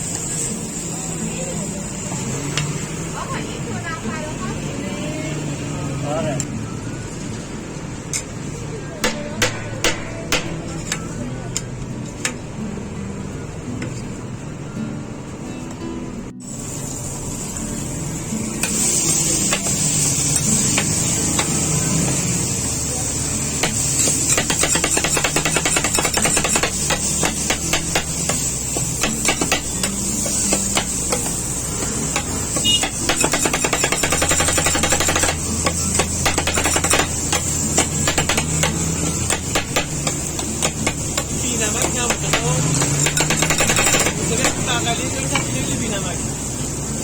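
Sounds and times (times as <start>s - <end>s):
steady high hiss: 16.4s - 47.0s
spatulas clattering on griddle: 18.6s - 22.2s, 23.5s - 45.6s.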